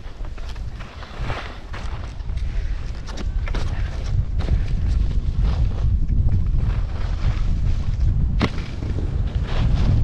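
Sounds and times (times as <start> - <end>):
skis scraping over snow: 0.0 - 2.8, 4.5 - 10.0
wind buffeting microphone: 0.0 - 10.0.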